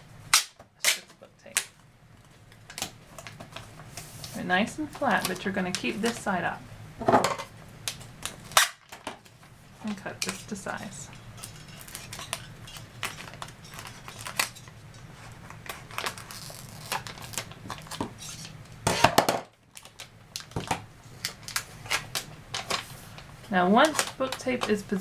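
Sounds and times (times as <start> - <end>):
scissors cutting plastic tape: 11.4 - 14.7, 15.7 - 18.5.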